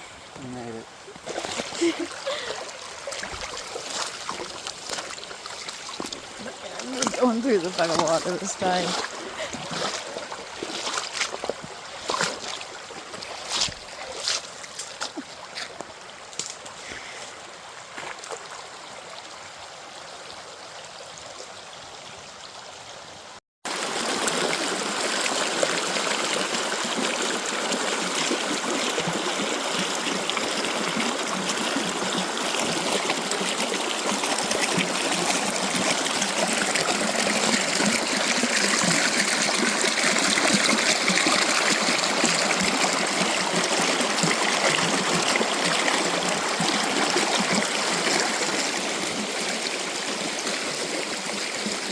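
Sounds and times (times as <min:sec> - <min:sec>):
splashes from wading: 0:01.2 - 0:15.7.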